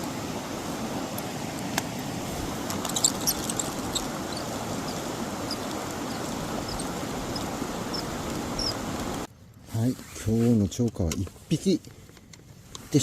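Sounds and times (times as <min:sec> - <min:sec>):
stream water rushing: 0:00.0 - 0:09.3.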